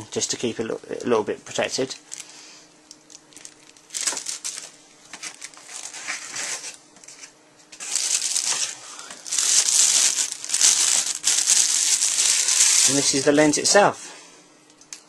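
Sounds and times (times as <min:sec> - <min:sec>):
packaging crinkling: 0:01.8 - 0:13.6.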